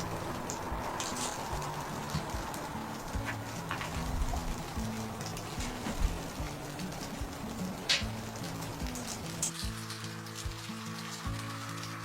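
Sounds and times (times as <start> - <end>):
background music low held notes: 0.0 - 12.0
faint crackling pattering noise: 0.0 - 12.0.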